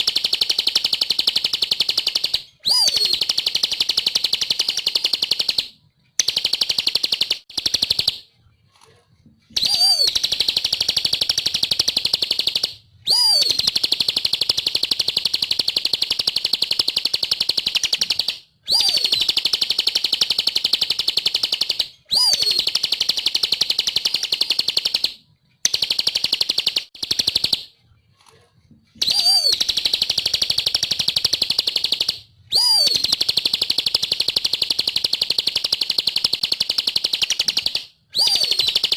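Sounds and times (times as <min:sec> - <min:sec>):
bird singing high trills: 0:02.6 - 0:03.3, 0:09.6 - 0:13.8, 0:18.7 - 0:19.4, 0:22.1 - 0:22.8, 0:29.0 - 0:33.3, 0:37.5 - 0:38.9.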